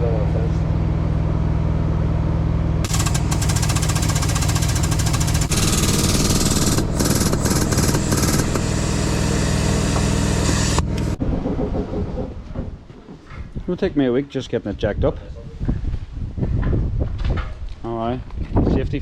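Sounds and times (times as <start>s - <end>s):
air impact wrench hammering: 2.8s - 11.2s.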